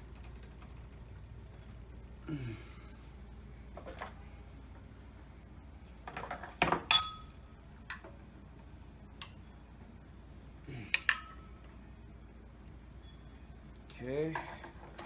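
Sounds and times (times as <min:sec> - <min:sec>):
metal parts clinking and tapping: 0:06.1 - 0:08.0, 0:11.0 - 0:11.4.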